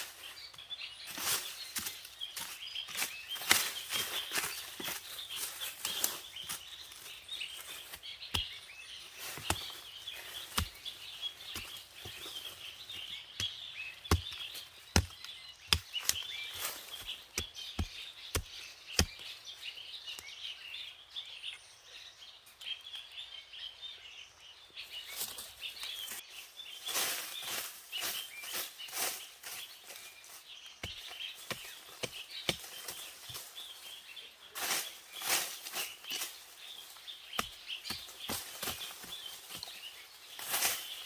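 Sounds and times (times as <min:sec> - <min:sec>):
birds chirping: 0:00.0 - 0:41.0
plants snapping and rustling: 0:01.1 - 0:19.2.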